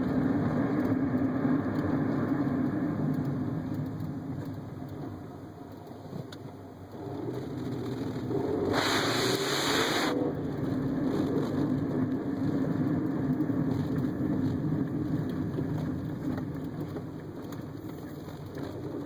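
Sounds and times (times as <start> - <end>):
car engine droning while driving: 0.0 - 19.0
hiss: 8.7 - 10.2.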